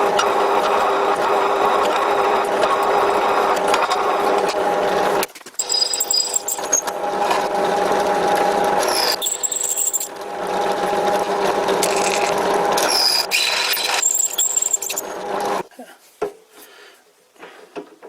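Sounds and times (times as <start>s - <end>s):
drill bit cutting metal: 0.0s - 15.6s
drill press motor hum: 0.0s - 15.6s
short high squeals: 5.6s - 6.9s, 8.9s - 10.1s, 12.9s - 15.1s.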